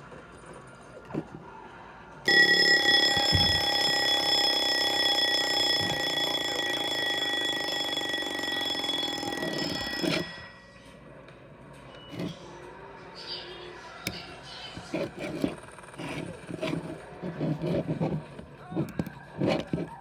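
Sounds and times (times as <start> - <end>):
alarm clock bell ringing loudly: 2.3 - 10.7.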